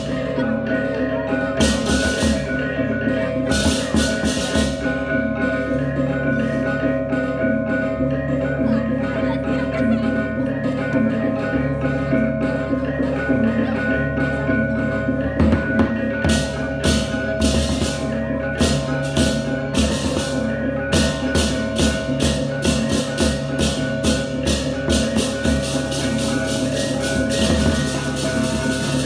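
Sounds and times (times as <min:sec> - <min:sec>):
cymbals clashing: 0:00.0 - 0:07.4, 0:10.6 - 0:29.0
gongs ringing: 0:10.6 - 0:29.0.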